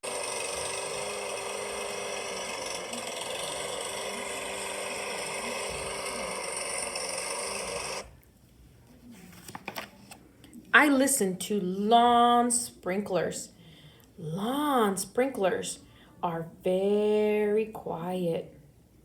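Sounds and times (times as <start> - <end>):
lawnmower engine running: 0.0 - 8.1.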